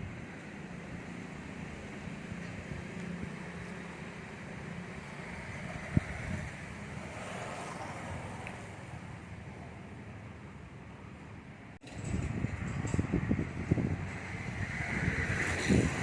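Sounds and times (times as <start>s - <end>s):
vehicle passing: 1.1s - 9.4s, 12.0s - 16.0s
wind on microphone: 5.3s - 7.1s, 11.8s - 16.0s.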